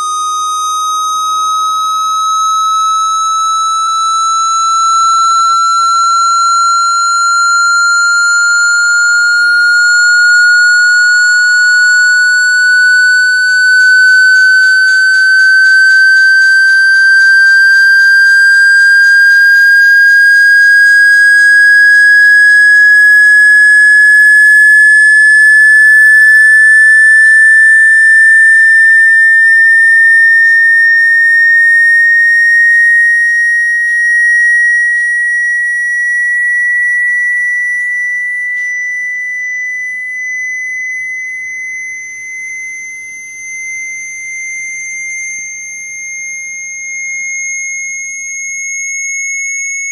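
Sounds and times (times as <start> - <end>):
high-pitched rising tone: 2.9 - 32.9.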